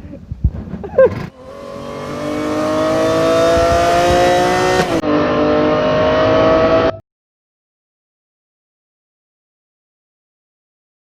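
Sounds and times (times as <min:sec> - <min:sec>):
motorcycle engine revving: 0:01.1 - 0:07.0.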